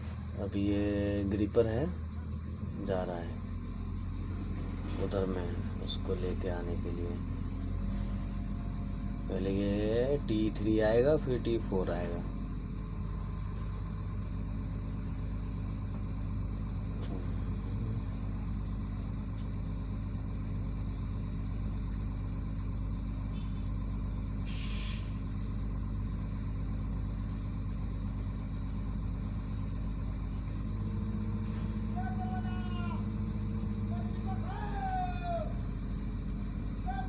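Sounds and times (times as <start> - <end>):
diesel engine running: 0.0 - 37.0
short hiss of air: 24.4 - 25.2.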